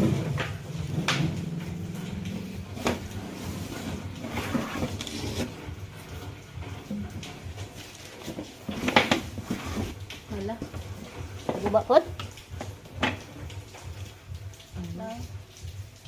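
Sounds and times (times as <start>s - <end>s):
low steady rumble: 0.0s - 8.0s.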